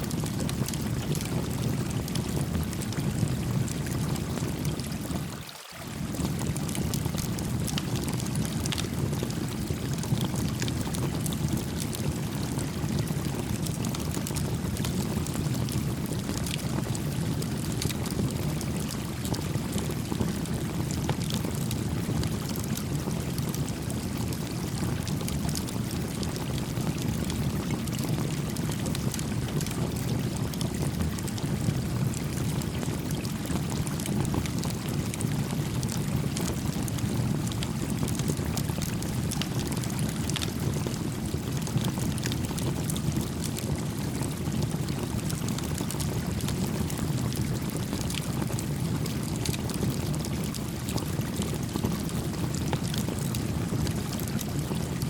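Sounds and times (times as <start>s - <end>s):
campfire crackling and popping: 0.1s - 5.3s, 6.2s - 55.0s
flowing creek: 3.8s - 7.6s.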